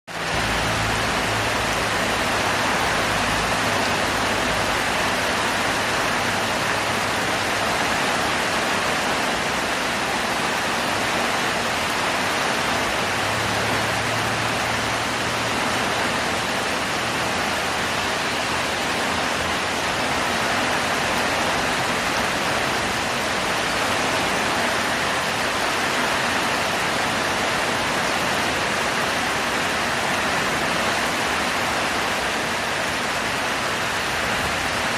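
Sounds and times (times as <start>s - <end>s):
heavy rain falling: 0.1s - 34.9s.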